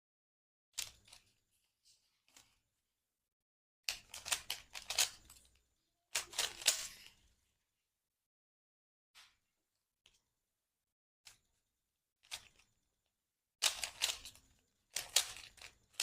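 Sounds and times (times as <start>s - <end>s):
puzzle cube clicking as turned: 3.9s - 7.2s, 13.6s - 16.0s.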